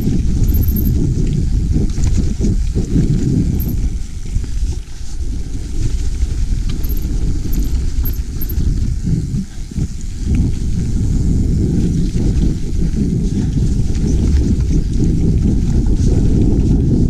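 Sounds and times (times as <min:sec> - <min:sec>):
bike clicks and rattles: 0:00.0 - 0:04.9, 0:06.0 - 0:08.9
wind on microphone: 0:00.0 - 0:17.0.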